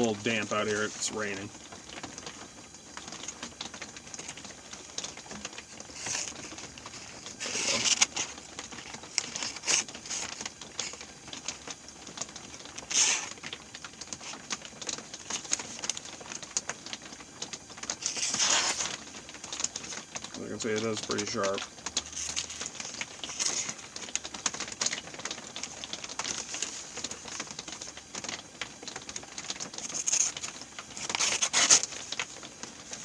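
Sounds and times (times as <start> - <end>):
light rain patter: 0.0 - 33.0
knife slicing damp paper: 5.9 - 6.4, 7.3 - 8.4, 9.2 - 11.0, 12.8 - 13.4, 18.0 - 19.0, 29.8 - 32.0.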